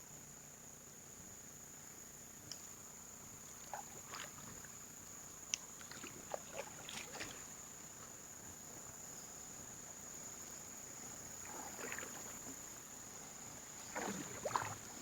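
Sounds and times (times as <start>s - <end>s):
paddle splashes and drips: 3.6s - 8.2s, 11.2s - 15.0s.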